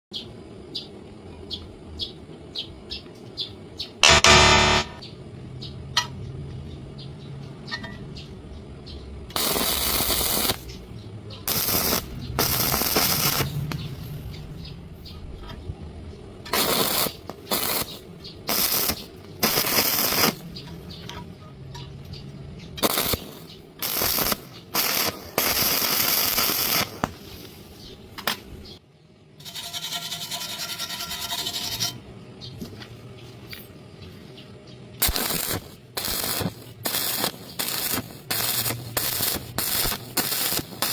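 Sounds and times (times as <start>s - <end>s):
arc welding crackling hiss: 9.3s - 10.9s, 11.5s - 14.7s, 16.4s - 20.7s, 22.8s - 28.4s, 35.0s - 40.9s.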